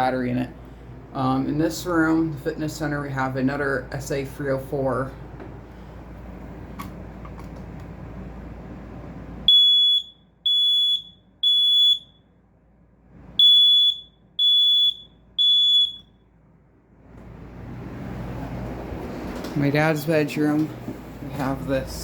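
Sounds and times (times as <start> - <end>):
smoke alarm high-pitched beeps: 9.5 - 12.3, 13.4 - 16.2.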